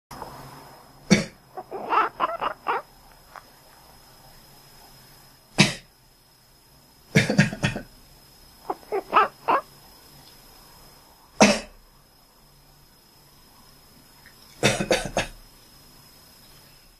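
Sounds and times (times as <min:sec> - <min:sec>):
cat meowing: 0:08.7 - 0:09.6.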